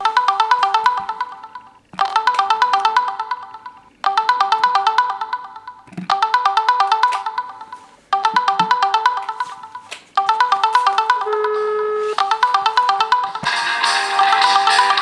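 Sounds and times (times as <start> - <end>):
mobile phone ringtone: 0.0 - 15.0.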